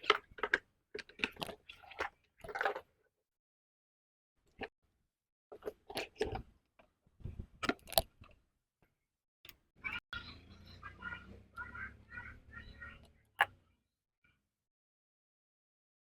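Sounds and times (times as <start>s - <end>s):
handling clicks and crinkles: 0.0s - 2.9s.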